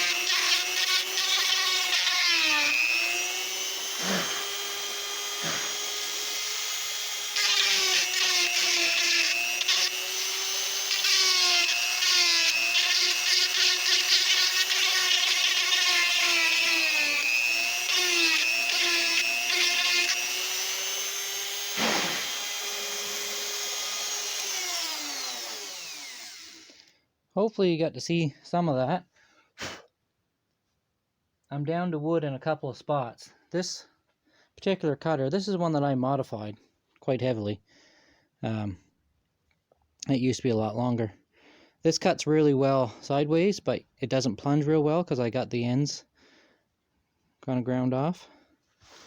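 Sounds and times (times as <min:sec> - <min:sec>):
cutter rasping on wood: 0:00.0 - 0:26.8
rotary tool motor whining: 0:00.0 - 0:26.8.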